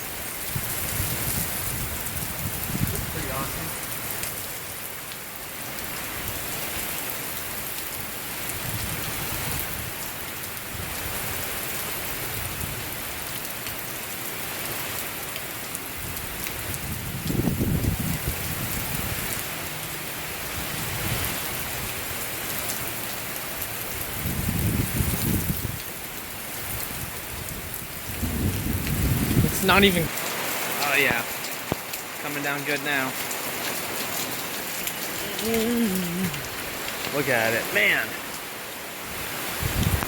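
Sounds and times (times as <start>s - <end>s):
heavy rain falling: 0.0s - 40.0s
low thunder rumbles: 16.7s - 19.2s, 27.4s - 29.7s.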